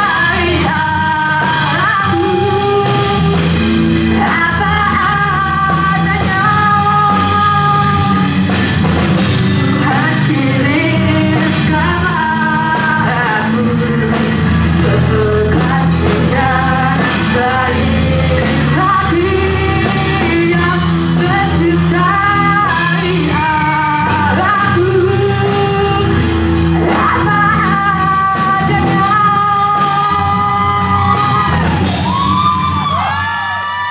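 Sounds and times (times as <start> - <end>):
live band playing: 0.0 - 33.9
steady drumbeat: 0.0 - 33.9
singer holding long notes: 9.4 - 33.9.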